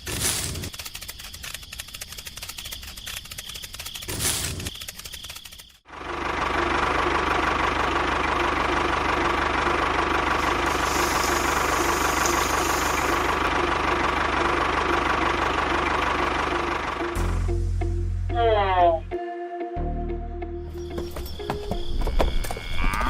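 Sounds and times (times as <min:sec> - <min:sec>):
small motor rattling and whining: 0:00.0 - 0:05.9, 0:09.7 - 0:16.8.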